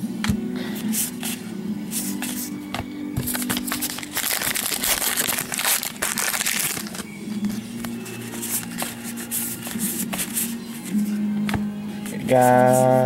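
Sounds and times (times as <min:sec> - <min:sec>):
wrapper tearing and crinkling: 0:03.3 - 0:07.1.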